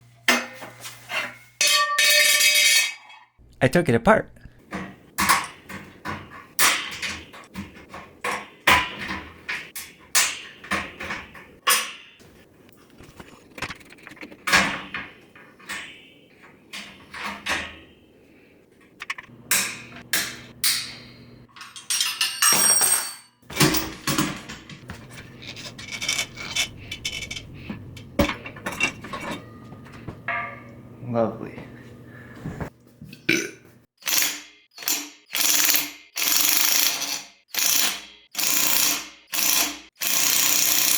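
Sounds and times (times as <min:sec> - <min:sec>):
metal tools clicking and clanking: 0:00.3 - 0:03.3, 0:18.8 - 0:30.8.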